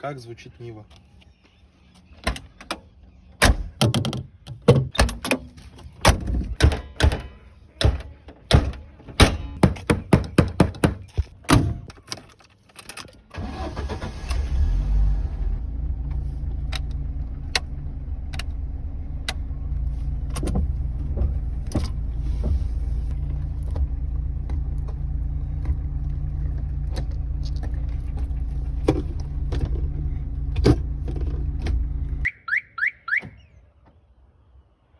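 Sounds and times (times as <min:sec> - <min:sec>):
car engine starting and idling: 0:11.6 - 0:34.0.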